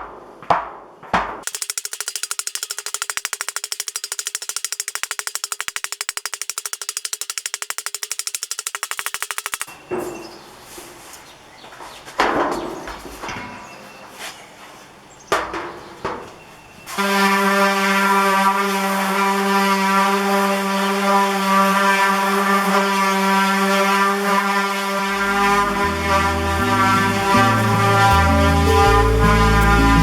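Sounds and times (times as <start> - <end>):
long held horn-like note: 17.0 - 30.0
low bass line: 25.5 - 30.0.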